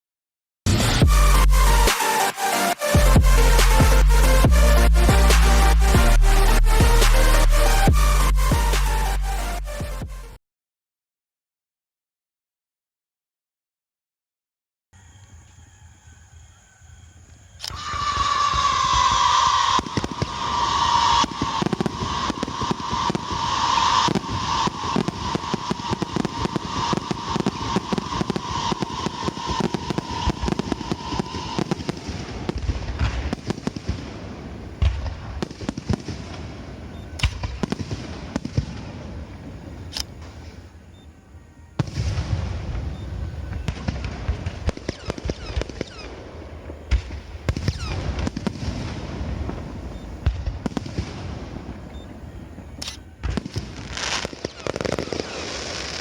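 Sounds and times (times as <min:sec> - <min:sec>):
fireworks crackling and banging: 0:00.7 - 0:08.0, 0:17.8 - 0:40.6, 0:41.8 - 0:56.0
firework whistle: 0:00.7 - 0:09.6, 0:15.0 - 0:56.0
deep firework booms: 0:18.0 - 0:40.4, 0:41.8 - 0:56.0.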